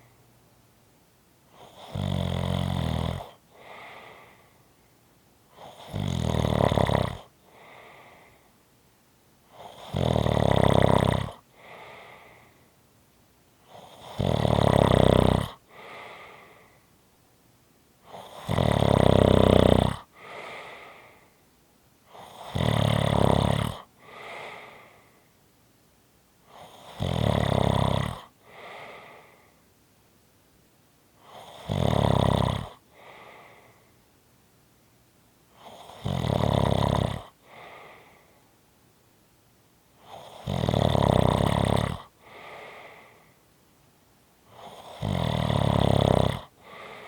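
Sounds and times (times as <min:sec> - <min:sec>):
person snoring: 0:01.5 - 0:04.5, 0:05.5 - 0:08.5, 0:09.5 - 0:12.6, 0:13.7 - 0:16.8, 0:18.0 - 0:21.3, 0:22.1 - 0:25.2, 0:26.5 - 0:29.5, 0:31.2 - 0:33.8, 0:35.5 - 0:38.3, 0:40.0 - 0:43.4, 0:44.5 - 0:47.0.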